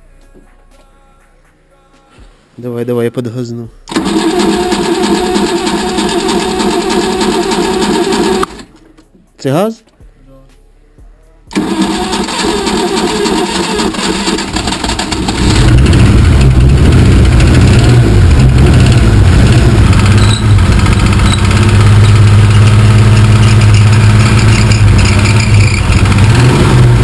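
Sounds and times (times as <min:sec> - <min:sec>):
car engine idling: 0:11.5 - 0:27.0.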